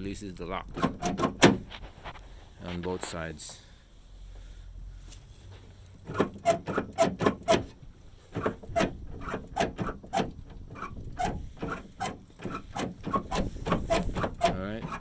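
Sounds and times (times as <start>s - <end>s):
tailgate latch clacking: 0.7s - 1.7s, 6.1s - 15.0s.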